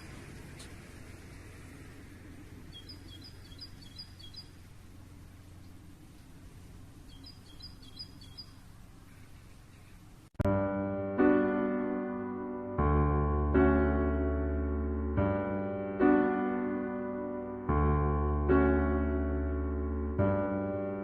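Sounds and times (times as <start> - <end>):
songbird chirping: 0.0 - 10.4
low outdoor rumble: 0.0 - 21.0.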